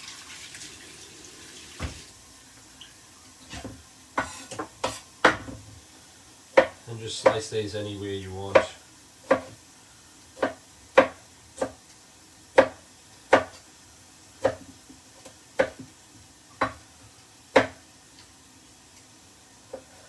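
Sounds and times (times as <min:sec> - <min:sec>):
knife chopping on a board: 0:03.5 - 0:05.6, 0:06.5 - 0:07.4, 0:08.5 - 0:09.6, 0:10.4 - 0:11.8, 0:12.6 - 0:13.6, 0:14.4 - 0:15.9, 0:16.6 - 0:16.8, 0:17.5 - 0:17.8.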